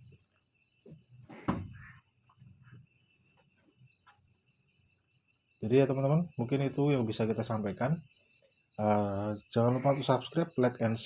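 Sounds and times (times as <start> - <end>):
cricket chirping: 0.0 - 11.0.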